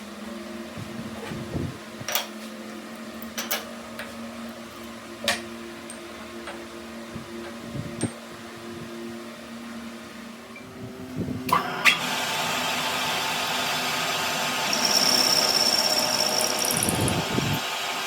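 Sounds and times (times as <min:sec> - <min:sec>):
electric motor humming: 0:12.4 - 0:18.0.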